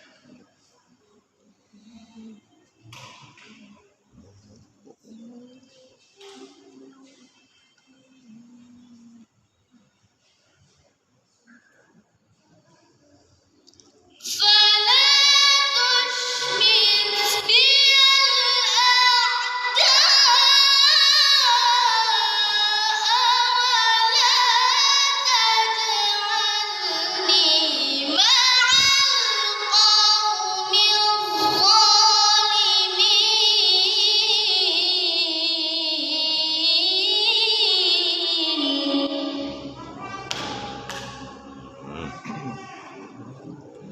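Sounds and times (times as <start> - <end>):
person reciting melodically: 1.7 - 9.3, 14.2 - 43.9.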